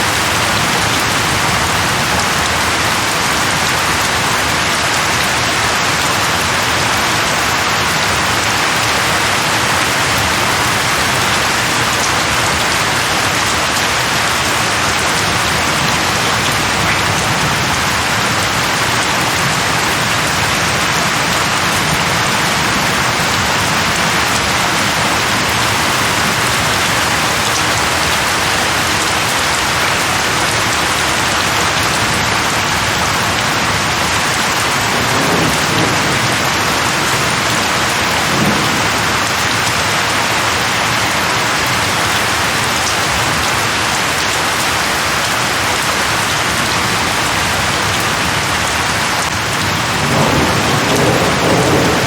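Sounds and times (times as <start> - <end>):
rain falling on leaves: 0.0 - 52.0
low rumbles of thunder: 34.8 - 39.3, 49.6 - 52.0.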